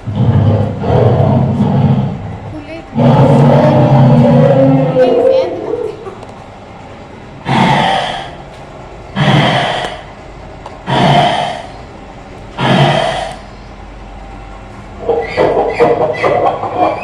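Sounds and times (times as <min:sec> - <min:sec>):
recorded animal growling from loudspeaker: 0:00.0 - 0:06.2, 0:07.4 - 0:08.5, 0:09.1 - 0:10.2, 0:10.8 - 0:11.9, 0:12.6 - 0:13.5, 0:15.0 - 0:17.0.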